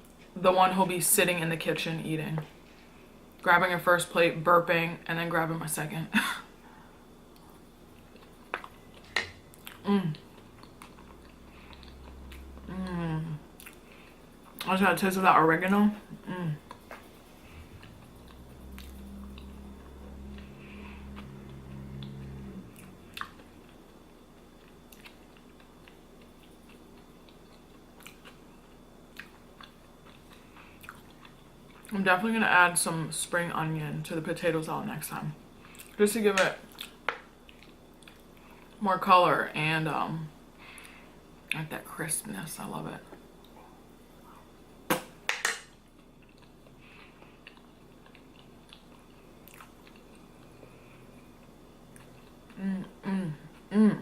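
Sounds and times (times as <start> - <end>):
low background hum: 0.0 - 54.0
person chewing food: 7.3 - 14.7, 16.0 - 31.9, 36.7 - 38.8, 45.8 - 52.6.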